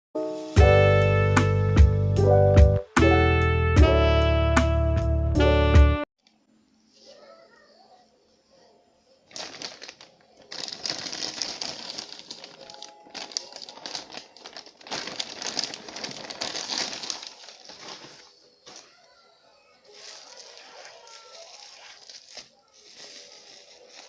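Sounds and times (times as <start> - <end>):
packaging crinkling and rustling: 9.3 - 24.0.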